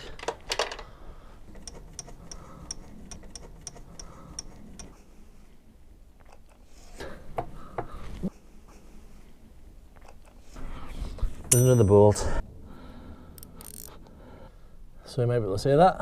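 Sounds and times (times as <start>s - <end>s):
ratchet wrench clicking: 13.4s - 14.0s.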